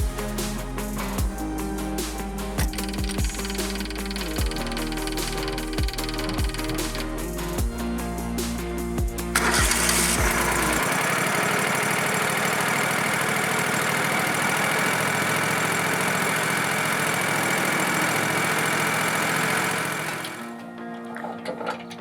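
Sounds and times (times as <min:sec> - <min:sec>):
sawmill engine running: 0:02.2 - 0:07.6, 0:09.3 - 0:20.6.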